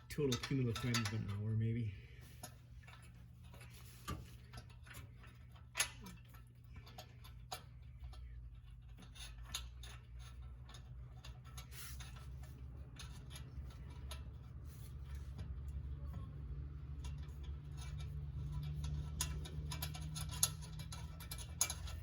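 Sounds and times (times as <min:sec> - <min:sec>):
hand tools clicking on metal: 0:00.0 - 0:01.4, 0:17.0 - 0:22.0.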